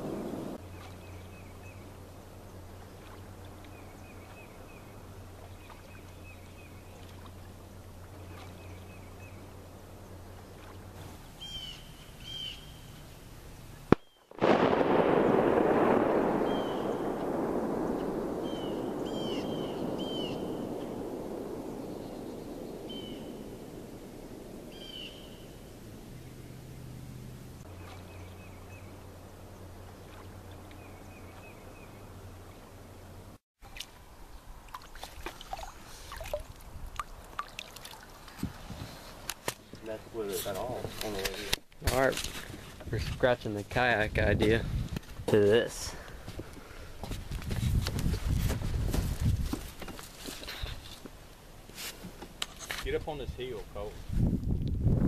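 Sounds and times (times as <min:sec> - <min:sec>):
loud rushing noise: 0:00.0 - 0:00.6
small birds chirping: 0:00.0 - 0:14.3, 0:16.4 - 0:33.3
low steady hum: 0:00.0 - 0:38.4.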